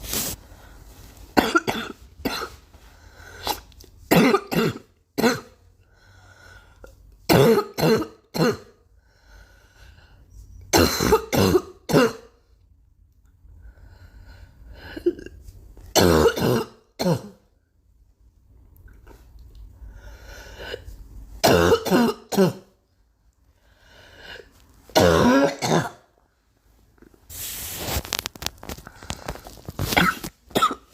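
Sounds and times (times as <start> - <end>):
girl coughing: 1.4 - 2.6, 4.1 - 5.6, 7.3 - 8.7, 10.7 - 12.3, 16.0 - 17.4, 20.7 - 22.7, 25.0 - 26.1, 29.9 - 30.9.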